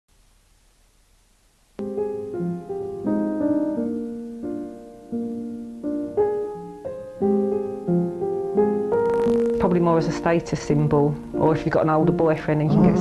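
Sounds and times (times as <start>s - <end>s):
slow gentle solo piano: 1.8s - 9.6s.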